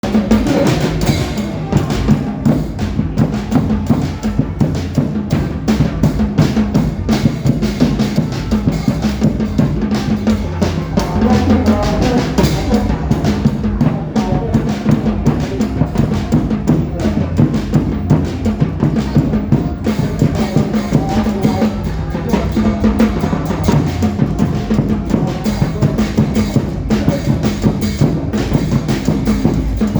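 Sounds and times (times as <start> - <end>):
loud dance music: 6.4 - 29.9.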